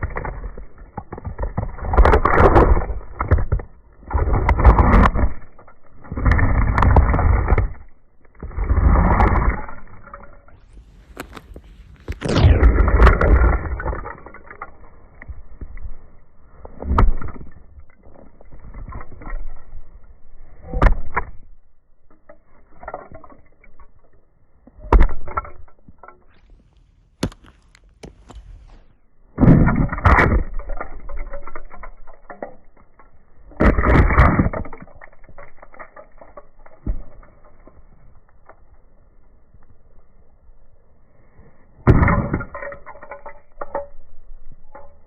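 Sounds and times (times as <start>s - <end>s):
small objects crunching underfoot: 0.0s - 21.5s, 24.8s - 38.8s
boots stomping on asphalt: 27.2s - 28.4s.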